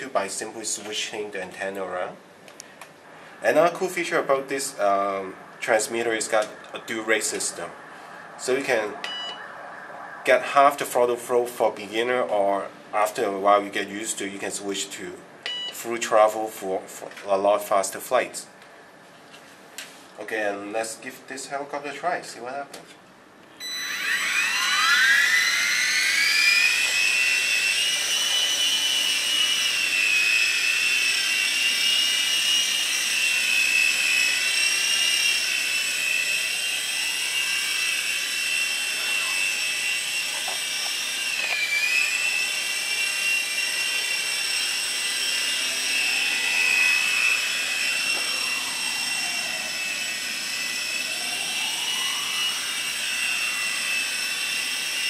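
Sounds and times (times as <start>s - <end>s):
toy helicopter rotors whining: 23.6s - 55.0s.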